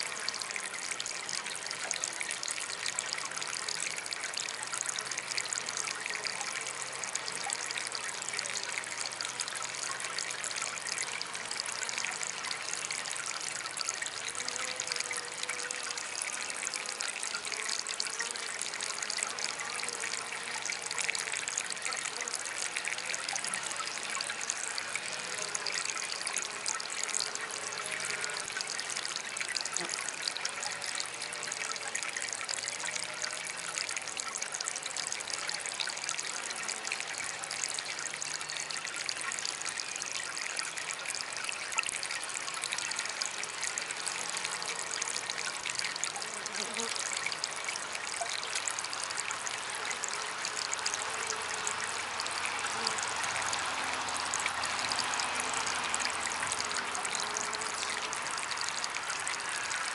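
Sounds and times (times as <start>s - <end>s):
water fountain trickling: 0.0s - 59.9s.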